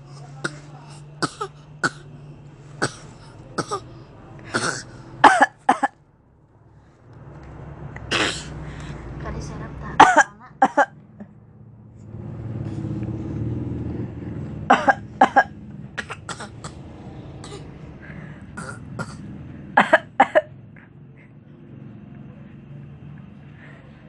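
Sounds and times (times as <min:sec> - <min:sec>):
baby coughing: 0:00.4 - 0:02.1, 0:02.8 - 0:03.9, 0:04.5 - 0:06.0, 0:08.1 - 0:08.5, 0:10.0 - 0:10.9, 0:14.7 - 0:16.8, 0:17.4 - 0:17.7, 0:18.6 - 0:20.5.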